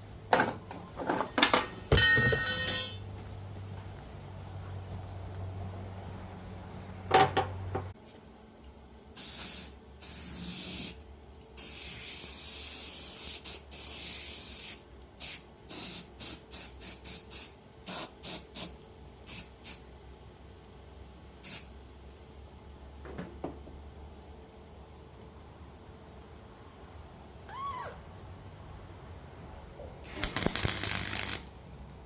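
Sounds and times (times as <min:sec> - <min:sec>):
welder arc hissing and crackling: 0:09.2 - 0:11.0, 0:30.1 - 0:31.6.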